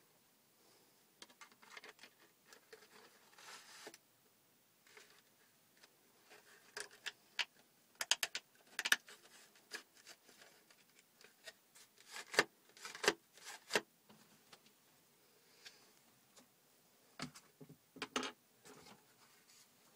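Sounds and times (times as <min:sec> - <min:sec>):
cardboard toy clicks and taps: 0:06.9 - 0:09.0.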